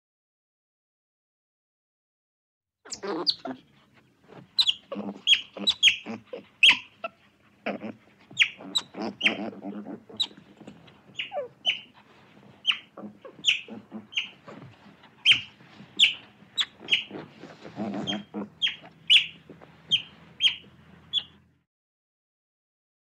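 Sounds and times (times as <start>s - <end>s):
otter squeaky chirps: 2.9s - 3.6s, 4.4s - 21.4s
low rough animal call: 2.9s - 21.5s.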